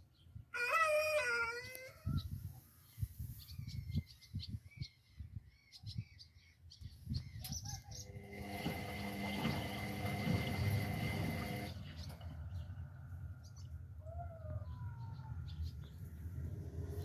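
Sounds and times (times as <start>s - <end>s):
washing machine motor hum: 7.9s - 12.4s
washing machine drum thuds: 8.2s - 11.7s.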